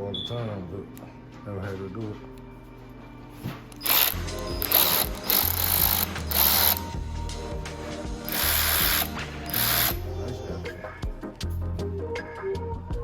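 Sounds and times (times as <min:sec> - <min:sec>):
ratchet wrench clicking: 0:03.8 - 0:07.0, 0:08.3 - 0:10.0.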